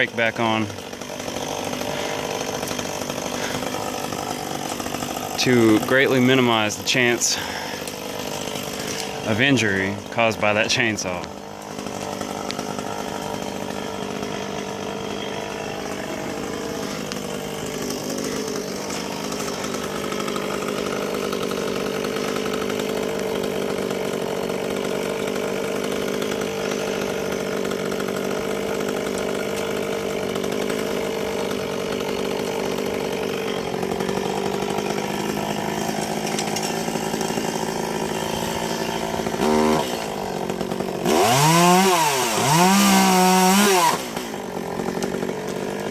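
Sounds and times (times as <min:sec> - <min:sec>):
chainsaw running at high speed: 0:00.0 - 0:45.9.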